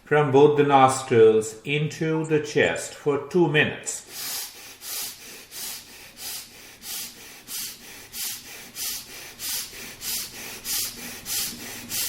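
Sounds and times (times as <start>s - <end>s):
forceful breathing through nostrils: 4.0s - 12.0s.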